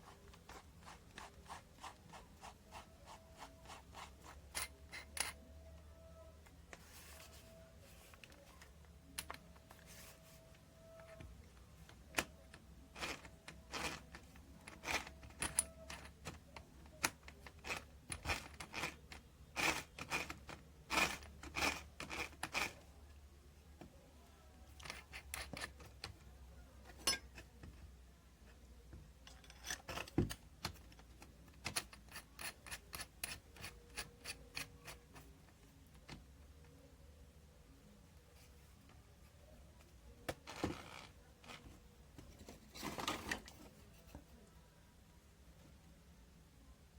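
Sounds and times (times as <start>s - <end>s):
small metal parts clicking: 12.9s - 22.8s, 24.7s - 26.1s, 29.2s - 35.2s.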